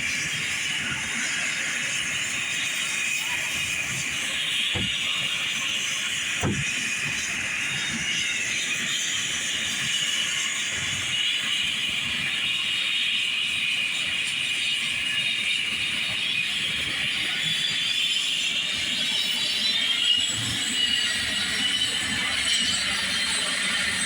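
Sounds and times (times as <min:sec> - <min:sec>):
helicopter turbine engine: 0:00.0 - 0:24.0
short thumps: 0:04.7 - 0:05.0, 0:06.4 - 0:06.7.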